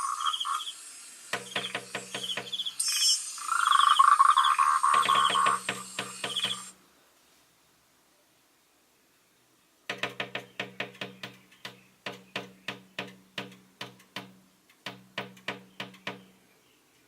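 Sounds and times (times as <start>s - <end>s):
bird pecking at window: 1.3s - 2.7s, 4.9s - 6.7s, 9.9s - 16.4s.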